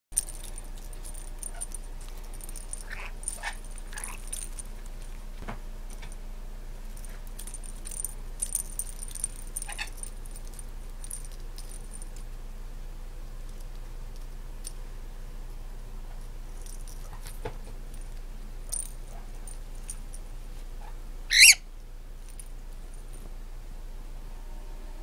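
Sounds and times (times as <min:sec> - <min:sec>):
jingling and rattling: 0:00.1 - 0:12.4, 0:16.4 - 0:21.6, 0:22.2 - 0:23.3
bird squeaky calls: 0:21.3 - 0:21.6.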